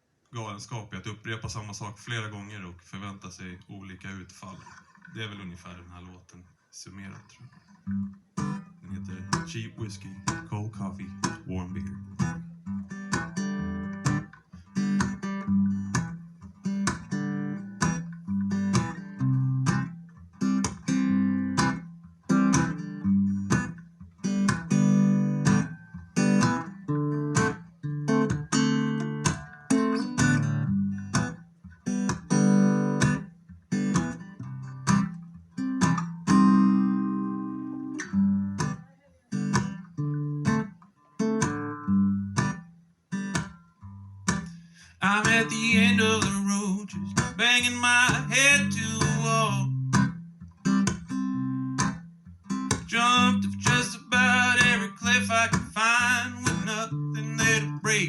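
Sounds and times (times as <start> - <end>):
acoustic guitar strumming: 7.5 - 58.0.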